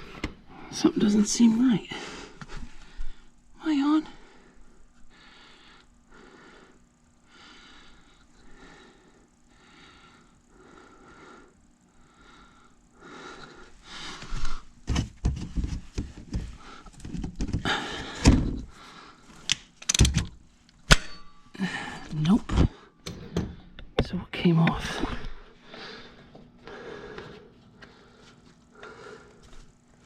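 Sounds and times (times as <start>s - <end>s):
clunks of metal parts and tools: 19.8s - 20.3s, 20.9s - 21.6s.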